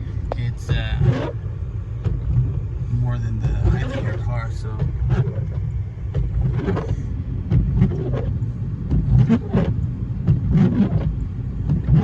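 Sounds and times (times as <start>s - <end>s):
car engine and tyres rumbling: 0.0s - 12.0s.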